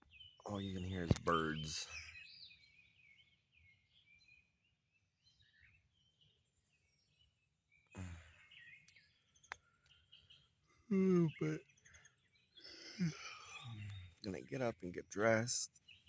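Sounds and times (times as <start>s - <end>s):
birds chirping and calling: 0.0s - 4.6s, 8.1s - 16.0s.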